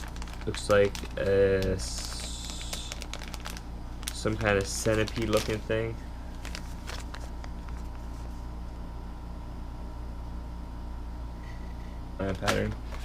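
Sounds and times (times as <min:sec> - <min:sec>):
plastic packaging clicks: 0:00.0 - 0:05.6, 0:12.3 - 0:13.0
steady low hum: 0:00.0 - 0:13.0.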